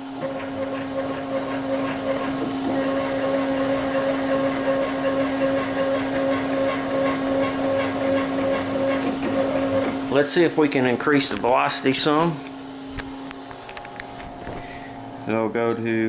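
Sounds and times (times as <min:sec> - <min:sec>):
stepper motor whine: 0:00.0 - 0:10.0.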